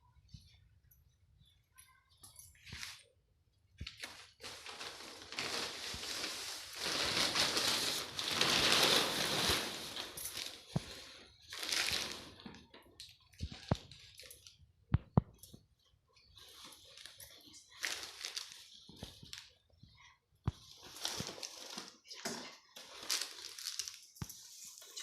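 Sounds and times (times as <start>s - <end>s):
packaging crinkling and rustling: 3.8s - 14.6s, 16.5s - 19.6s, 20.5s - 25.0s.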